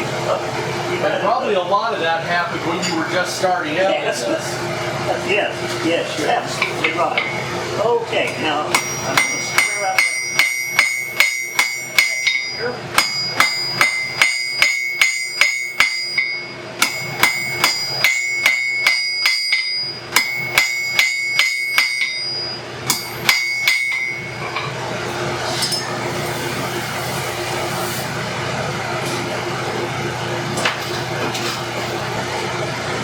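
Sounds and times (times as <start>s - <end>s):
steady hum with rushing hiss: 0.0s - 33.0s
hammer striking steel on anvil: 6.6s - 7.4s, 8.2s - 24.8s, 25.5s - 26.5s.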